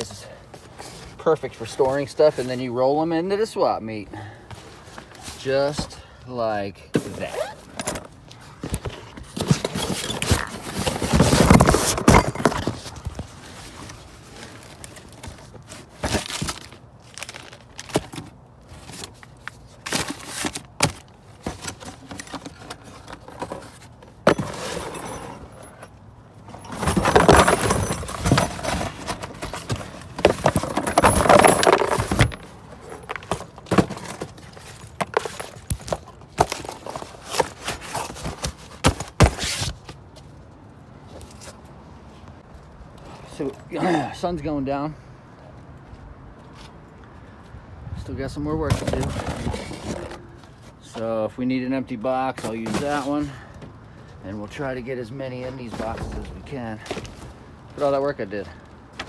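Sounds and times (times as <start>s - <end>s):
metal hardware clinking and scraping: 8.8s - 13.0s, 18.9s - 39.7s
metal clattering: 26.5s - 39.5s.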